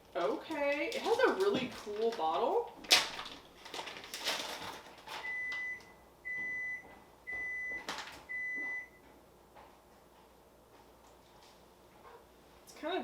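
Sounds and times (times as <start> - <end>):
appliance alert beeping: 5.2 - 9.0.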